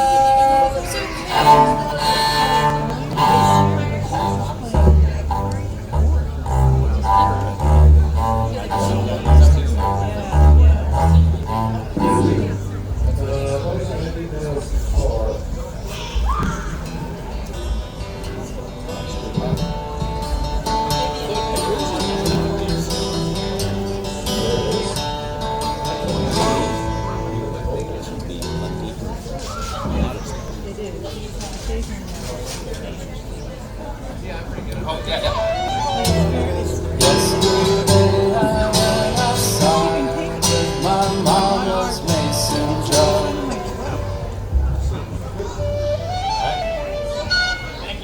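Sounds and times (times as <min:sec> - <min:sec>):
acoustic guitar strumming: 0:00.0 - 0:14.2, 0:16.8 - 0:29.2, 0:35.4 - 0:48.0
held instrument notes: 0:00.0 - 0:14.4, 0:35.1 - 0:48.0
live band playing country music: 0:00.0 - 0:16.0, 0:16.8 - 0:30.6, 0:34.9 - 0:48.0.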